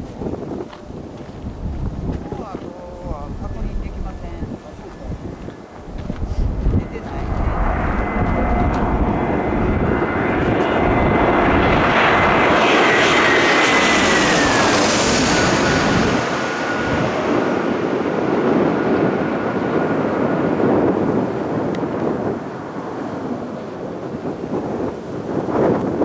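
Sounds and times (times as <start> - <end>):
jet engine rush overhead: 0.0 - 26.0
wind buffeting microphone: 0.0 - 26.0
high whine dropping in pitch: 1.7 - 20.1.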